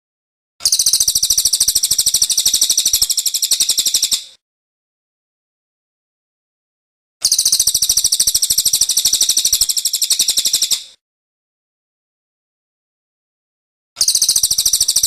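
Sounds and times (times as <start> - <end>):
songbird trill: 0.6 - 4.4, 7.2 - 11.0, 14.0 - 15.0.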